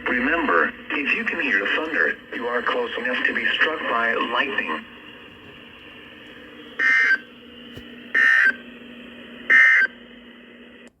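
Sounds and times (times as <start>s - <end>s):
steady background hum: 0.0s - 11.0s
buzzing digital data tones: 6.4s - 7.3s.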